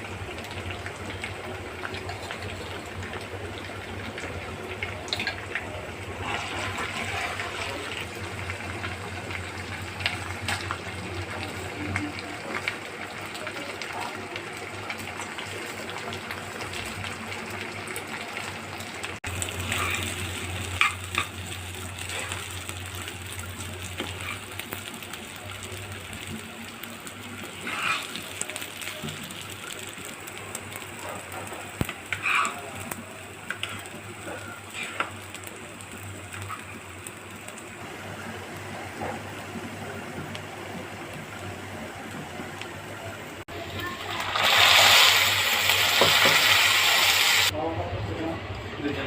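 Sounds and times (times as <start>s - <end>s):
food sizzling in a pan: 0.0s - 47.6s
utensil scraping pan: 27.6s - 28.2s.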